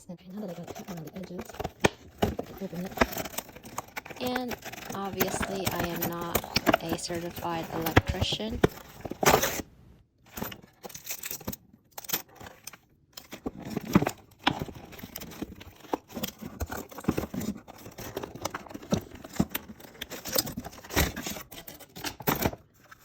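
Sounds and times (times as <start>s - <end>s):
packaging crinkling and tearing: 0.6s - 9.6s.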